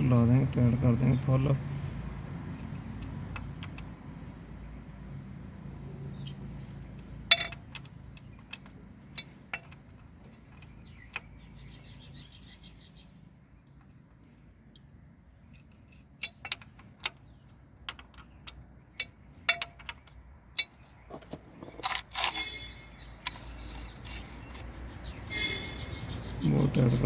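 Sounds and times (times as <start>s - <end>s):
metal clinks and taps: 6.2s - 11.4s, 15.5s - 24.7s
metal scraping clatters: 19.5s - 25.7s.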